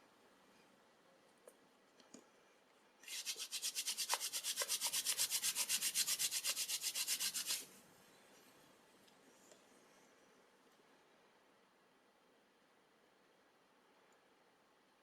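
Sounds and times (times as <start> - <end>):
palms rubbing briskly: 3.1 - 7.6.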